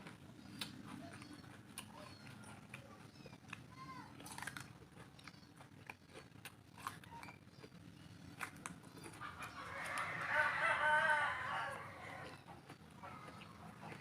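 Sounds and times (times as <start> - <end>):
chewing and crunching food: 0.0 - 14.0
rooster crowing: 9.4 - 12.4.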